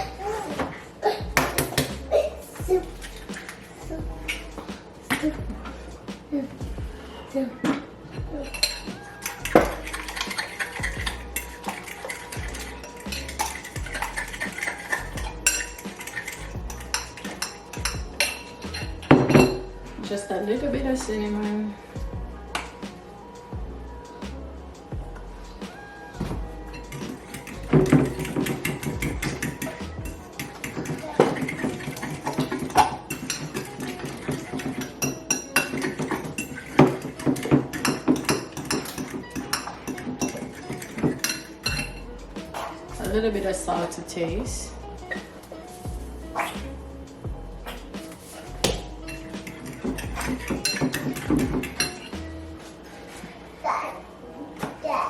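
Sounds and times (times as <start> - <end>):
utensil scraping a mixing bowl: 8.5 - 19.4, 26.7 - 44.2, 47.6 - 52.3.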